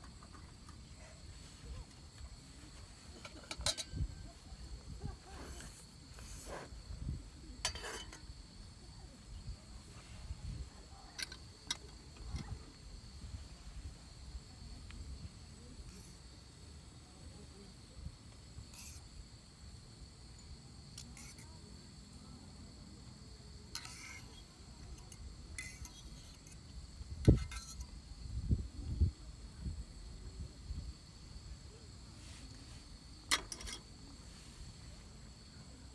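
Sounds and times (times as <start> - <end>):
rustling and clinking objects: 0.0 - 6.7, 32.2 - 34.6
insects buzzing: 0.0 - 35.9.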